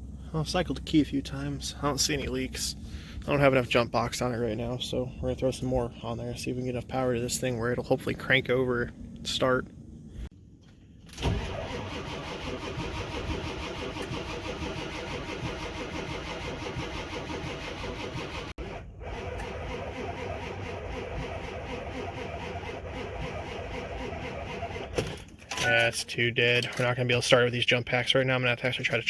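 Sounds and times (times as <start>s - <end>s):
diesel engine cranking without firing: 11.1s - 25.9s.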